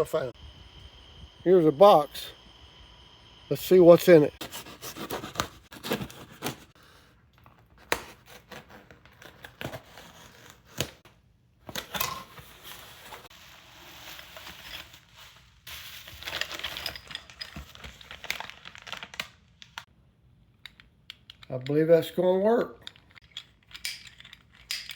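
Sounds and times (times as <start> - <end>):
packing tape tearing: 4.4 - 6.7, 7.7 - 11.0, 16.0 - 19.8
packaging crinkling: 11.7 - 19.9.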